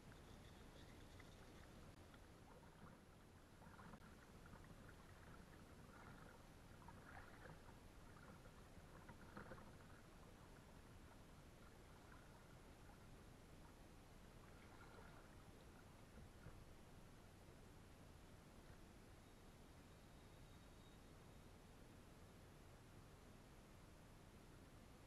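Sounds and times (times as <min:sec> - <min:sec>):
quiet hiss: 0:00.0 - 0:25.0
kayak paddle splashing: 0:00.8 - 0:13.1, 0:14.4 - 0:16.6.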